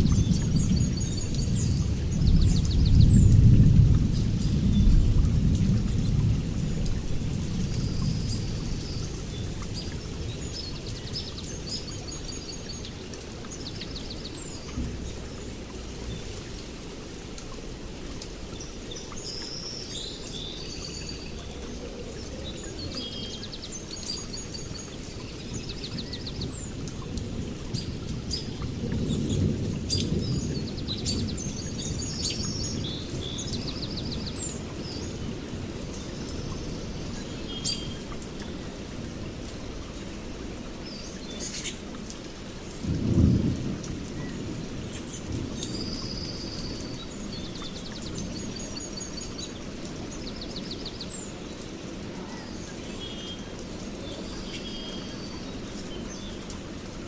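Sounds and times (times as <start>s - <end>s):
light rain patter: 0.0s - 57.0s
birds chirping and trilling: 40.8s - 42.0s.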